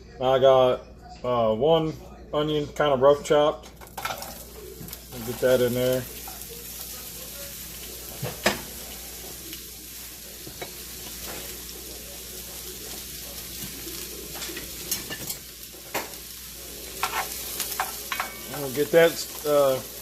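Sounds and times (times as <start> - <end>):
onion sizzling in oil: 3.8 - 20.0.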